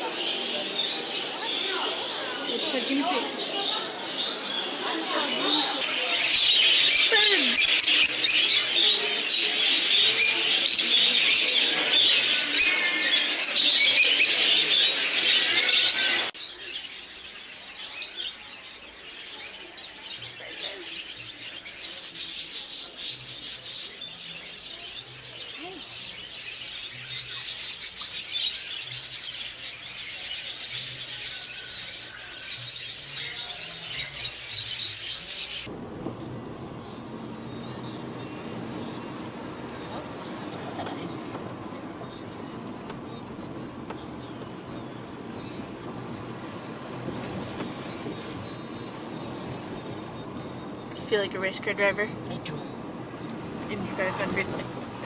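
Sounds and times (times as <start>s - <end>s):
small birds chirping chorus: 0.0s - 35.7s.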